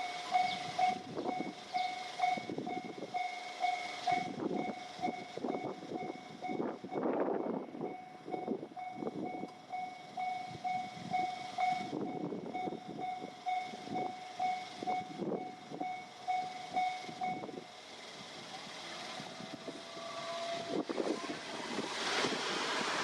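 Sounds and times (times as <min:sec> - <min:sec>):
level-crossing warning bell beeping: 0:00.0 - 0:21.3
train clattering over rail joints: 0:00.0 - 0:23.0.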